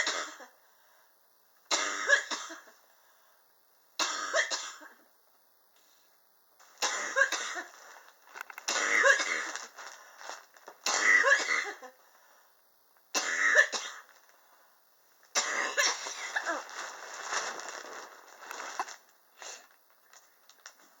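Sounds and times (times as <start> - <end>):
person coughing: 0.0 - 0.6, 1.7 - 2.7, 6.8 - 7.8, 8.7 - 9.6, 10.9 - 12.0, 13.2 - 14.1, 15.4 - 16.7.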